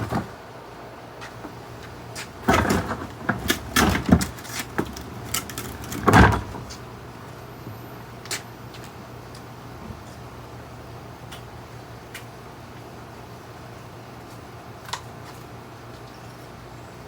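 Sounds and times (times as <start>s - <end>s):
knocks bumps and scrapes: 2.2s - 6.9s.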